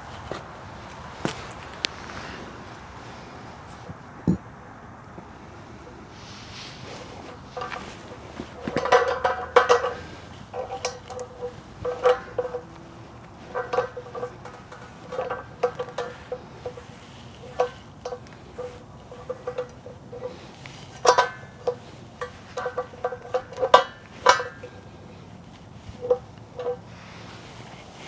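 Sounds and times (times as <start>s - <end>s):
light metallic clinks with ringing: 7.2s - 27.0s.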